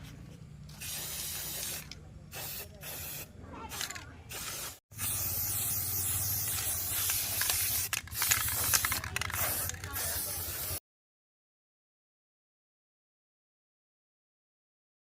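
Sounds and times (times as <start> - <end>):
pressurised spray hissing: 0.7 - 10.8.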